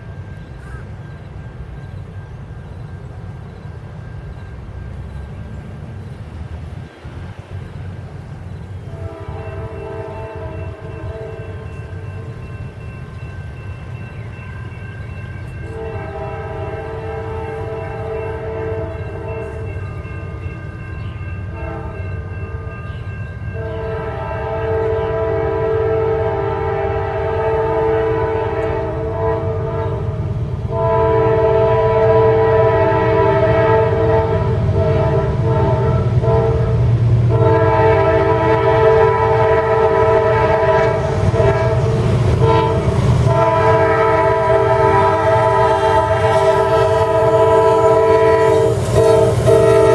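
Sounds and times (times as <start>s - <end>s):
rumble of passing train: 0.0s - 49.9s
locomotive air horn blasts: 8.8s - 12.3s, 15.7s - 20.4s, 21.5s - 22.8s, 23.5s - 49.9s.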